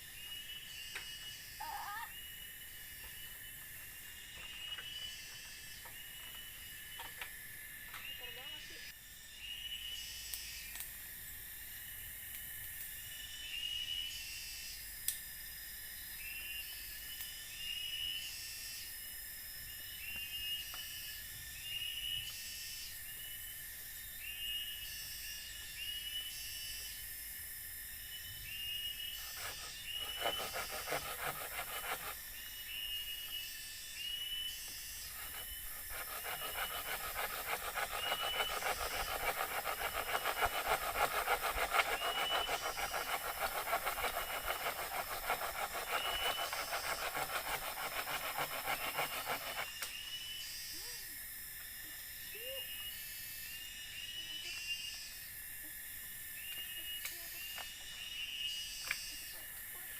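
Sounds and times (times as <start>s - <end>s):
tool rasping against wood: 29.2s - 32.2s, 35.1s - 49.7s.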